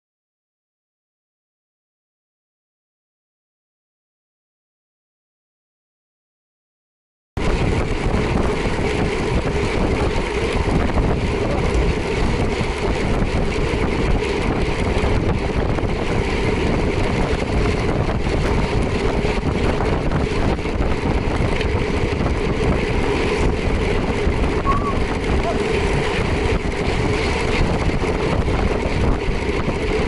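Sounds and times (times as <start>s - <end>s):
motorcycle engine running: 7.4s - 30.0s
wind on microphone: 7.4s - 30.0s.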